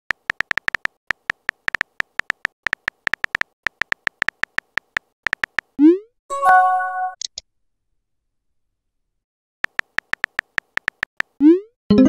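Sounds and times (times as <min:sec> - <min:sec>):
phone keyboard typing clicks: 0:00.1 - 0:05.8, 0:09.6 - 0:11.4.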